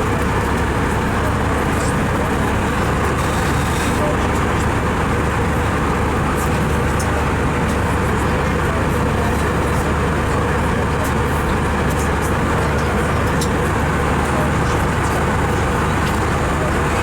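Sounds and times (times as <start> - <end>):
jet engine cabin rush: 0.0 - 17.0.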